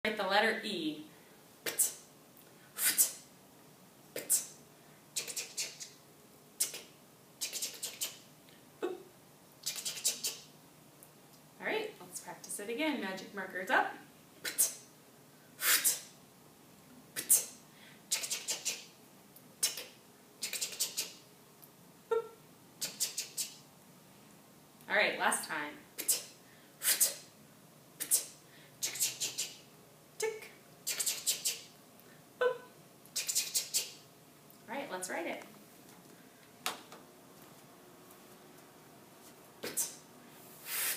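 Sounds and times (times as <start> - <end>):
woman making hissing mouth sounds: 1.6 - 2.1, 2.7 - 3.3, 4.1 - 4.6, 5.2 - 6.0, 6.6 - 10.5, 14.4 - 14.9, 15.6 - 16.2, 17.1 - 21.2, 22.1 - 23.7, 25.9 - 27.4, 28.0 - 31.7, 32.4 - 34.0, 39.6 - 40.9.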